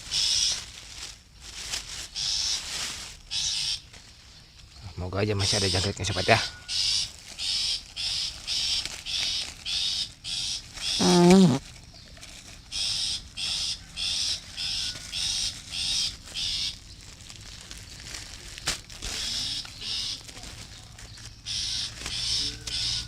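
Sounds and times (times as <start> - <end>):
bird raspy hissing calls: 0.0 - 0.6, 2.1 - 3.9, 5.2 - 11.6, 12.6 - 17.0, 19.0 - 23.0.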